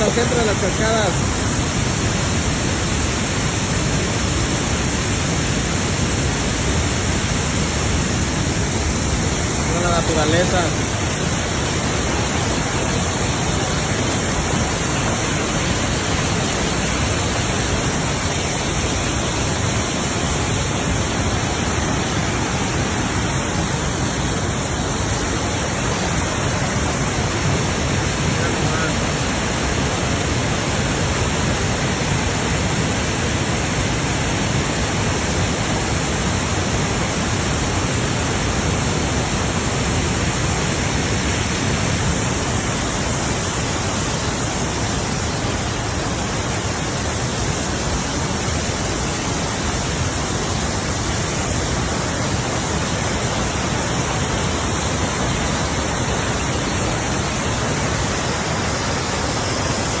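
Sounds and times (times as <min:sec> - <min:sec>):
waterfall rushing: 0:00.0 - 1:00.0.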